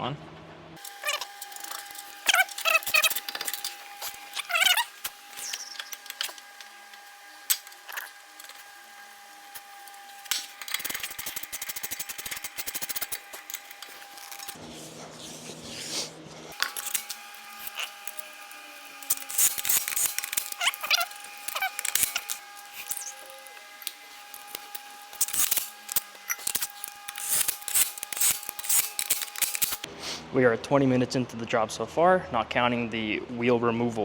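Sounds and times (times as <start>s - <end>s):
metal tools clinking: 0.8s - 6.6s, 16.6s - 29.8s
steady high-pitched hum: 0.8s - 15.7s, 16.5s - 29.9s
rapid clicks: 9.5s - 14.6s.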